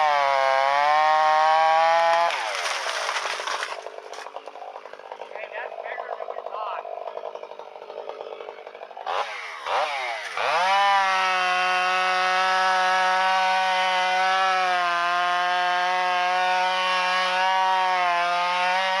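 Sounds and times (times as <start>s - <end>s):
chainsaw idling and revving: 0.0s - 19.0s.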